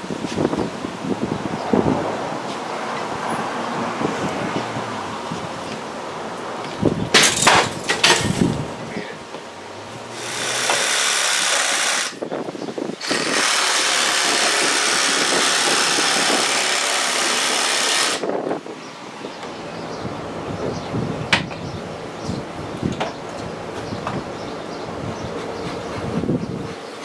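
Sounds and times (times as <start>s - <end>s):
power tool cutting drywall: 9.9s - 12.3s, 13.0s - 18.3s.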